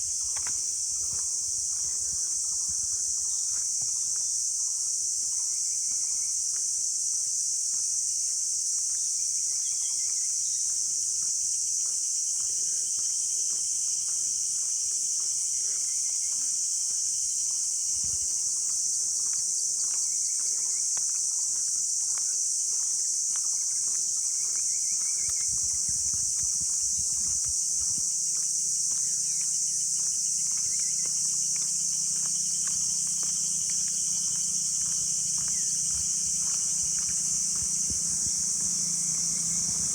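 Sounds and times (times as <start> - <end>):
insect chorus drone: 0.0 - 39.9
faint low hum: 25.0 - 39.9.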